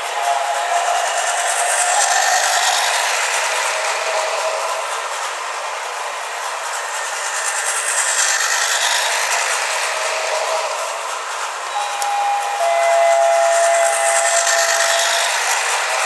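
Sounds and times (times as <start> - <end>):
toy train motor whirring: 0.0 - 16.0
toy train wheels rattling: 0.0 - 16.0.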